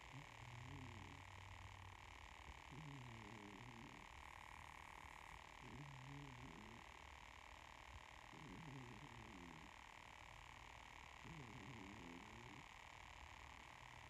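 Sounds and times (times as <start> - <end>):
cat snoring: 0.0 - 14.0.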